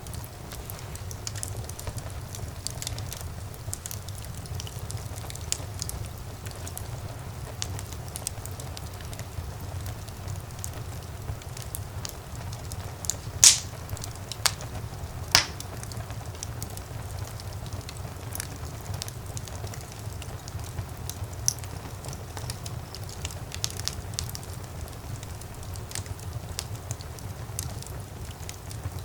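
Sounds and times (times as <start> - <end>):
fire crackling: 0.0 - 29.0
low rumble of flames: 0.0 - 29.0
logs popping: 13.0 - 16.0.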